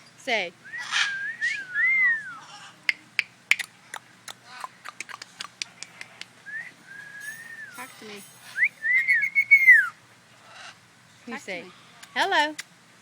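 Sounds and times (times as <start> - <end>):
parrot whistling: 0.6 - 2.6, 6.5 - 10.0
parrot clicking: 2.9 - 6.3.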